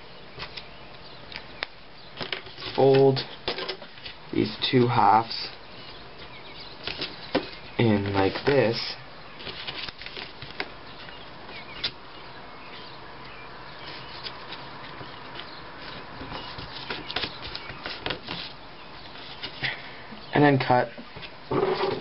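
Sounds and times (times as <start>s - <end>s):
stiff paper rustling and crackling: 6.7s - 12.0s, 13.8s - 19.8s.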